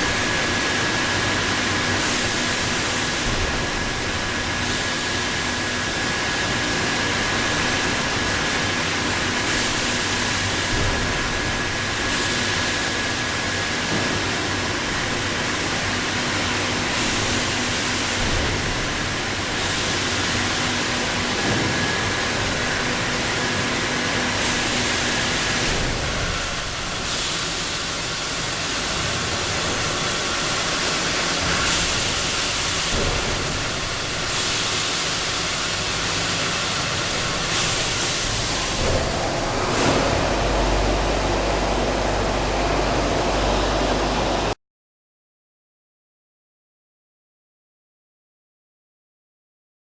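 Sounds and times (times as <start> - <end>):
motor hum: 38.2 - 44.6
steady whine: 38.2 - 44.6.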